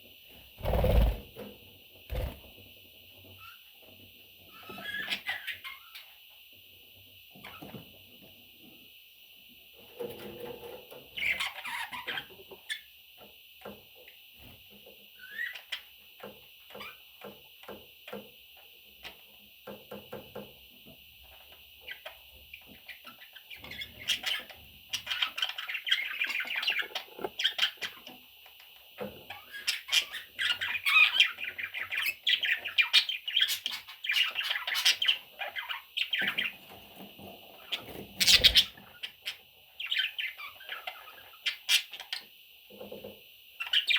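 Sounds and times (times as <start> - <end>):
baby budgerigars chirping and squawking: 4.5 - 6.2, 11.2 - 12.8, 15.2 - 16.0, 21.8 - 28.2, 29.0 - 42.3, 43.6 - 43.9.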